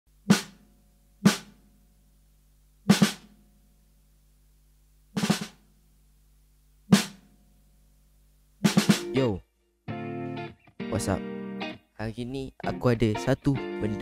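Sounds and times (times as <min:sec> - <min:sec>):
snare and kick drum hits: 0:00.2 - 0:00.6, 0:01.2 - 0:01.6, 0:02.9 - 0:03.4, 0:05.2 - 0:05.6, 0:06.9 - 0:07.3, 0:08.6 - 0:09.2.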